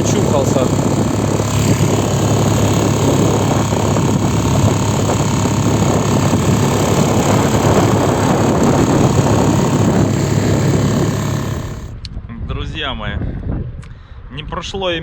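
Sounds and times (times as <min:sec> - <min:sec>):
outboard motor droning: 0:00.0 - 0:12.0.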